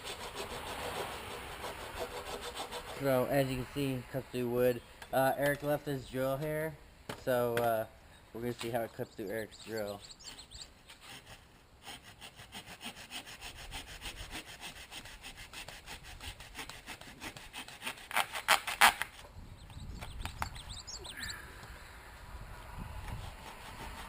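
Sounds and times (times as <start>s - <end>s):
hand saw sawing plastic: 0.0s - 3.6s, 10.9s - 19.2s, 23.0s - 24.0s.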